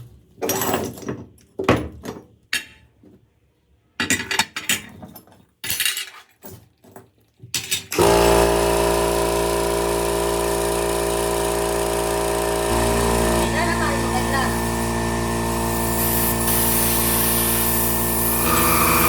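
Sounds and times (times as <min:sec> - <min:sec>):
metal parts clinking: 0:04.0 - 0:08.0
power tool motor running: 0:08.0 - 0:19.0.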